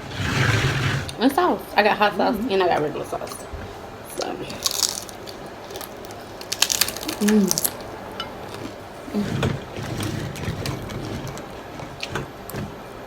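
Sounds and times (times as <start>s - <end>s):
soft chewing: 4.1s - 9.2s
crunching taco shell: 4.5s - 8.9s.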